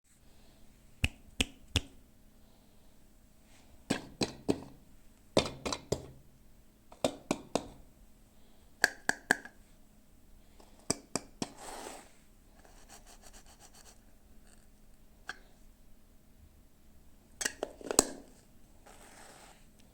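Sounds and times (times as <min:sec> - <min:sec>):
faint scratching: 0:18.8 - 0:19.7.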